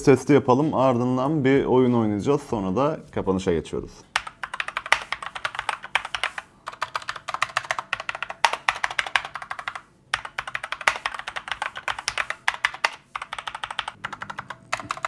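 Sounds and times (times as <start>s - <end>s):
mechanical keyboard typing: 4.1s - 15.0s.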